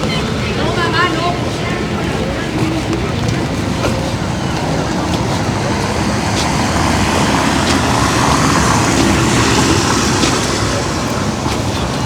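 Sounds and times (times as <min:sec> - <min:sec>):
engine rumble: 0:00.0 - 0:12.0
water noise: 0:00.0 - 0:12.0
wind: 0:00.0 - 0:12.0.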